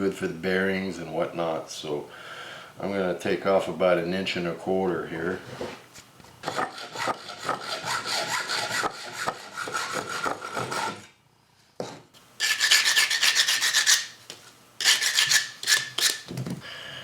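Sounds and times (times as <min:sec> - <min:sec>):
hand saw cutting metal bolt: 0:06.4 - 0:11.0, 0:12.4 - 0:14.2, 0:14.8 - 0:16.3.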